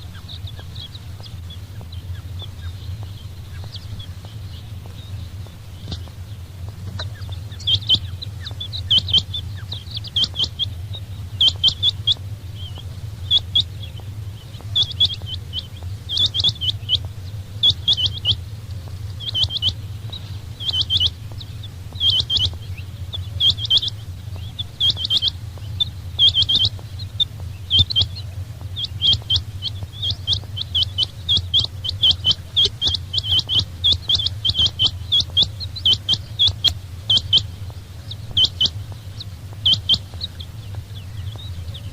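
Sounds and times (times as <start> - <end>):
quail chirping: 0.0 - 41.9
steady low hum: 0.0 - 41.9.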